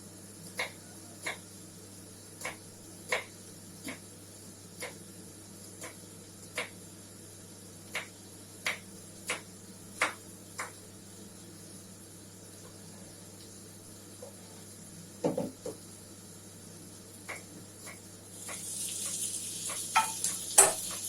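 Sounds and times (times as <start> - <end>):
knife tapping on cutting board: 10.0 - 10.8, 19.7 - 21.0.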